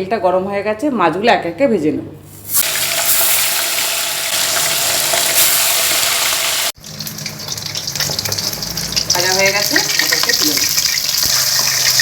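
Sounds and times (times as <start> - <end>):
fish frying in hot oil: 2.4 - 12.0.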